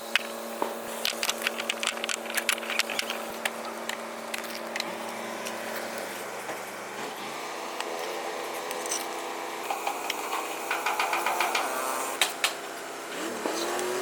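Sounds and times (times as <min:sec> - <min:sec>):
sharp clicks and scrapes: 0:00.0 - 0:06.1.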